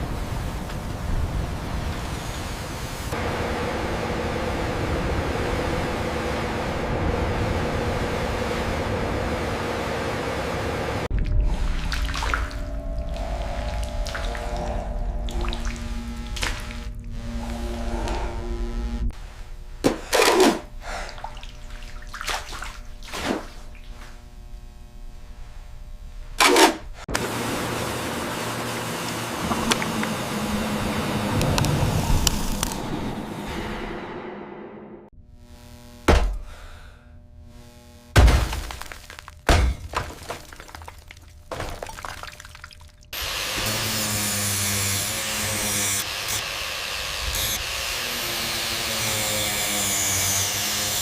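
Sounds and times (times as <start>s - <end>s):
low hum: 0.0s - 38.2s
water whooshes: 11.1s - 17.0s
faint sustained tone: 12.6s - 19.2s.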